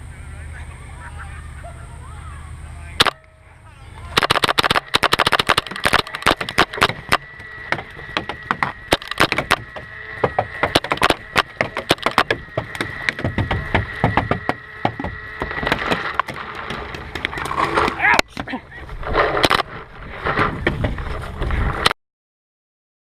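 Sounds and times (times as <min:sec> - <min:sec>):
balls cracking against bunkers: 0:04.0 - 0:21.9
paintball markers firing: 0:04.1 - 0:18.0.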